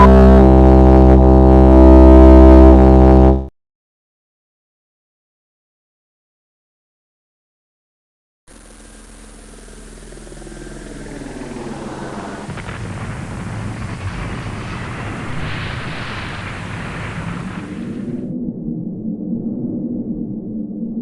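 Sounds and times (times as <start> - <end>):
low rumbling drone: 0.0 - 3.5, 8.5 - 21.0.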